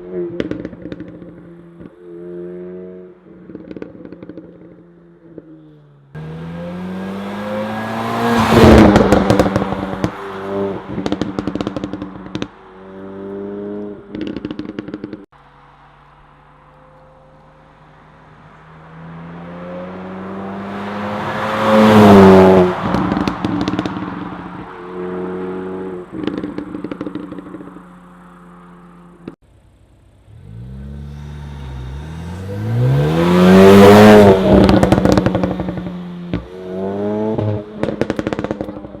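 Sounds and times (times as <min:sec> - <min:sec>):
car engine revving: 0:00.0 - 0:39.0
exhaust pops and crackles: 0:00.3 - 0:02.0, 0:03.4 - 0:05.5, 0:08.4 - 0:12.6, 0:13.8 - 0:16.8, 0:22.7 - 0:24.7, 0:26.0 - 0:28.2, 0:34.2 - 0:36.6, 0:37.3 - 0:39.0.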